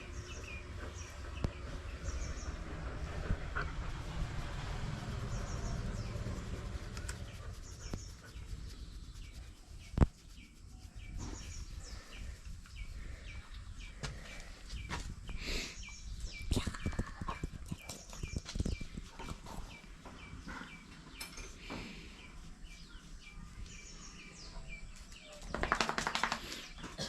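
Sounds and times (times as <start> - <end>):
low rumble: 0.0 - 10.0
birds chirping: 0.0 - 27.0.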